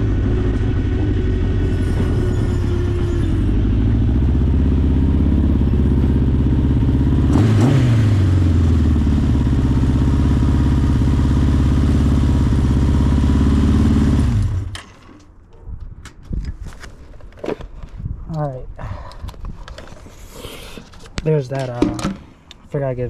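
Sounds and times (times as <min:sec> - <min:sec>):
motorcycle engine idling: 0:03.6 - 0:07.3, 0:08.4 - 0:14.6.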